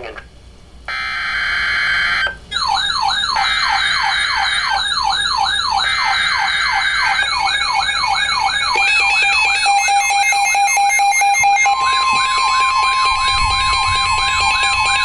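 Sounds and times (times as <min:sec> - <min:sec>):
electronic alert siren yelps: 0:00.9 - 0:15.0
steady higher tone: 0:08.6 - 0:15.0.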